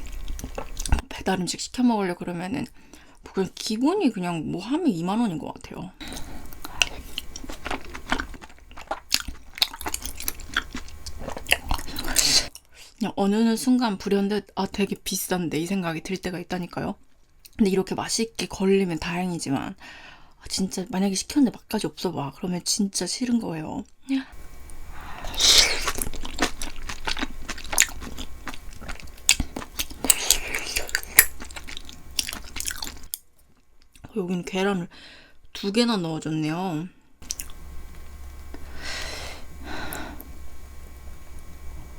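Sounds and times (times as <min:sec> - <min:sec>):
close chewing with wet squelches: 0:06.0 - 0:12.7, 0:25.2 - 0:33.2, 0:37.2 - 0:37.6.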